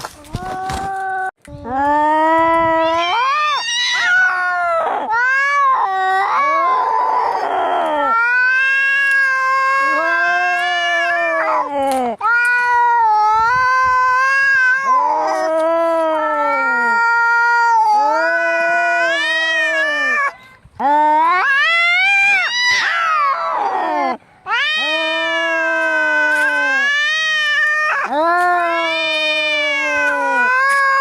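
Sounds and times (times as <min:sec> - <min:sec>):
cats yowling in a fight: 0:02.6 - 0:20.3, 0:21.0 - 0:31.0
harsh raspy cat cry: 0:02.6 - 0:20.3, 0:21.2 - 0:31.0.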